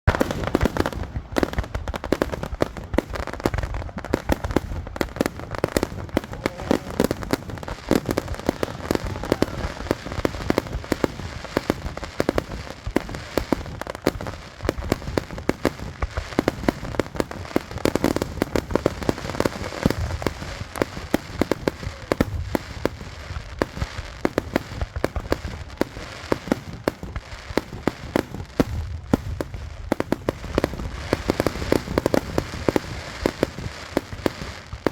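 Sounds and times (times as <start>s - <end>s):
fireworks bangs and crackles: 0.0s - 34.9s.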